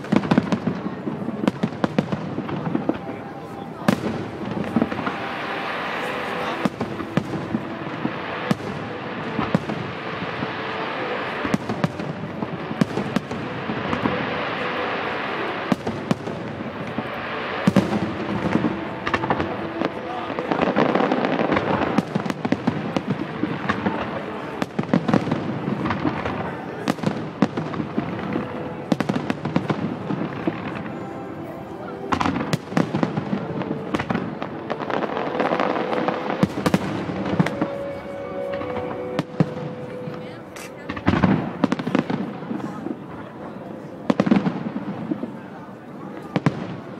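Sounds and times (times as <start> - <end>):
continuous background din: 0.0 - 46.9
fireworks bangs and crackles: 0.0 - 46.9.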